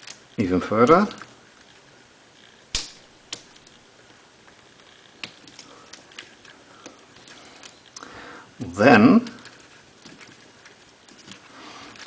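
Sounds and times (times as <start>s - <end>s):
plastic parts clicking and knocking: 9.2s - 12.0s.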